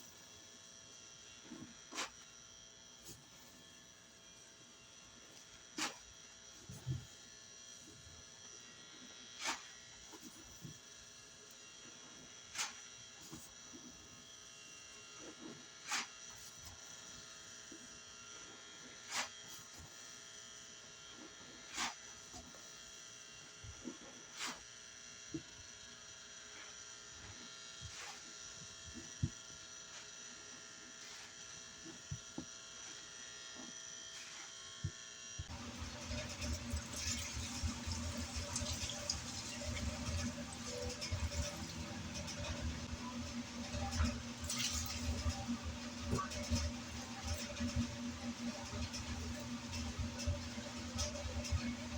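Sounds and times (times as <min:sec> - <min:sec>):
fluorescent light buzzing: 0:35.5 - 0:51.9.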